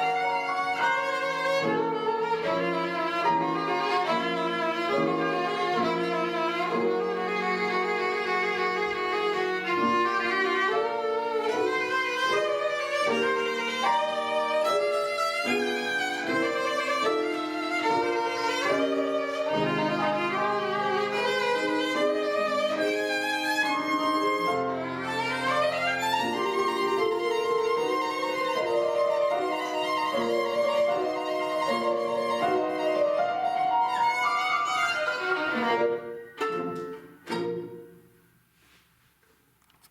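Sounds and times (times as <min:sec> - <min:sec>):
solo violin playing: 0:00.0 - 0:38.2.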